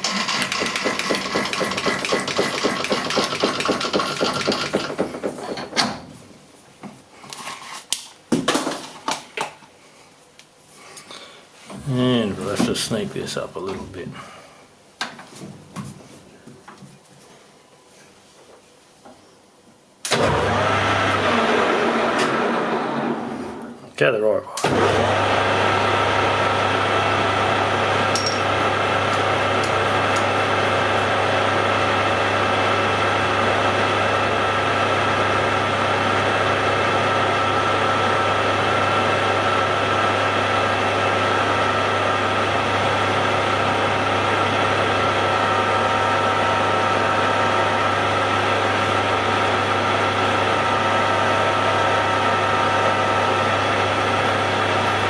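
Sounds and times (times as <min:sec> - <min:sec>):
lathe motor humming: 0:24.7 - 0:55.0.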